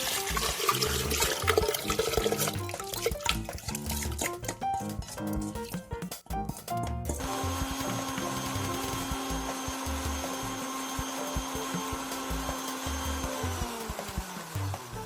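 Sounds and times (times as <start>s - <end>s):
electric blender motor running: 0.0s - 2.8s, 7.2s - 15.0s.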